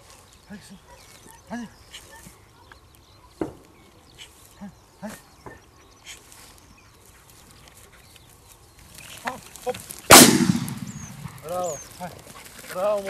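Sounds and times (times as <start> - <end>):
shotgun shot with ringing tail: 10.1 - 11.4.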